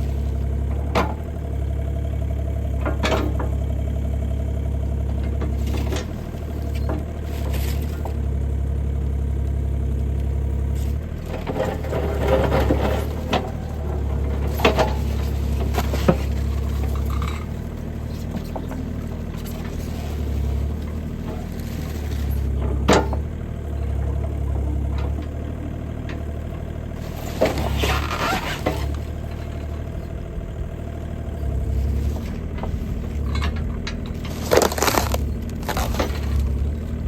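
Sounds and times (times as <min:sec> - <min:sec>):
diesel engine running: 0:00.0 - 0:37.0
cardboard box crunching: 0:34.3 - 0:36.4.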